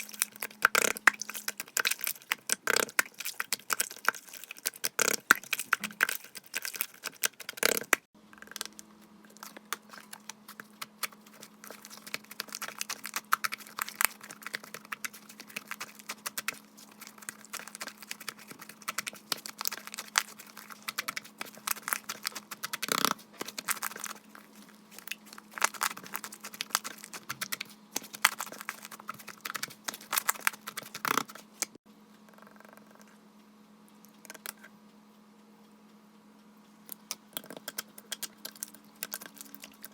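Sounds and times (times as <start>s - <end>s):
hands squishing slime: 0.0s - 31.8s.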